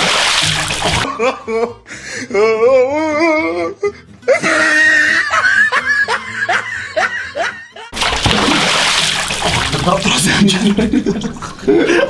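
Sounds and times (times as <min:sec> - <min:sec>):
water splashing: 0:00.0 - 0:01.1, 0:08.0 - 0:11.4
man laughing hard: 0:04.3 - 0:07.9, 0:10.7 - 0:12.0.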